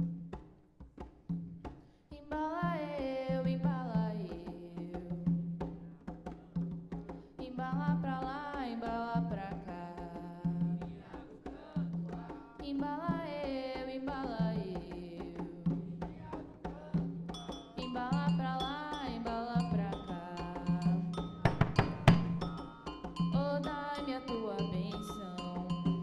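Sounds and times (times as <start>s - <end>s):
fast percussion drumming: 0.0s - 26.0s
person singing: 17.8s - 21.2s, 23.2s - 26.0s.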